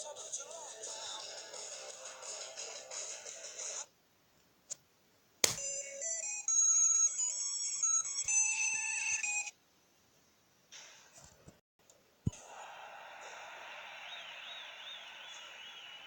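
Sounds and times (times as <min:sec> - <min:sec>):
sharp click: 0:05.4 - 0:05.6.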